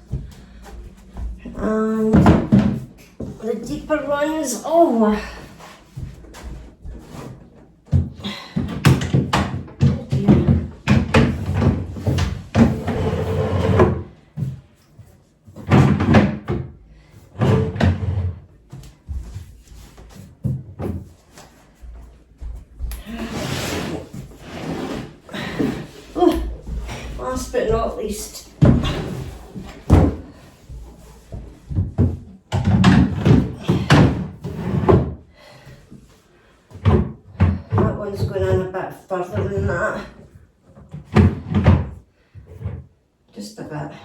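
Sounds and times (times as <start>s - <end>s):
drawers sliding and knocking: 6.1s - 14.2s, 15.5s - 18.5s, 23.2s - 35.2s
drawer knocking and scraping: 8.7s - 14.1s, 17.4s - 18.5s.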